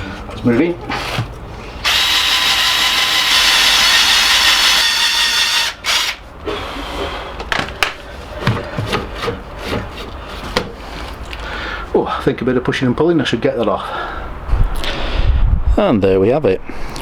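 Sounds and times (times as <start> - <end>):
electric drill running under load: 1.8 - 6.7.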